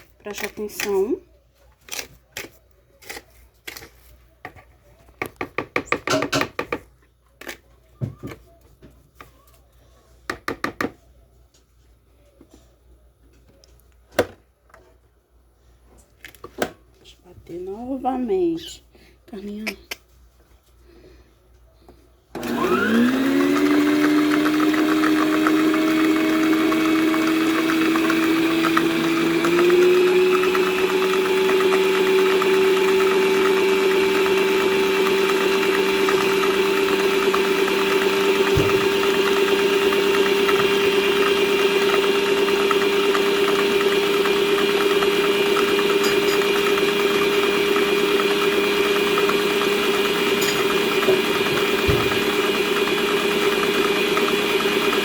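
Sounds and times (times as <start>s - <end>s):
stand mixer motor whining: 22.4s - 55.0s.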